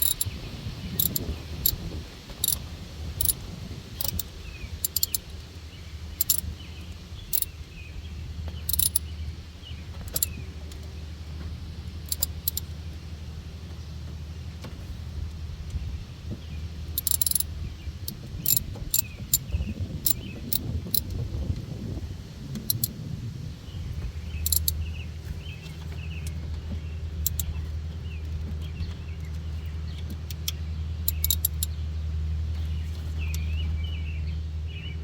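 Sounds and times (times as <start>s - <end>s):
metallic clicks of hand tools: 0.0s - 0.3s, 1.0s - 1.8s, 4.0s - 5.3s, 6.2s - 6.4s, 8.7s - 9.0s, 10.1s - 10.3s, 12.1s - 12.6s, 17.0s - 17.5s, 18.4s - 19.4s, 22.6s - 22.9s, 24.4s - 24.8s, 27.2s - 27.5s, 30.2s - 31.7s
steady low hum: 0.0s - 35.0s.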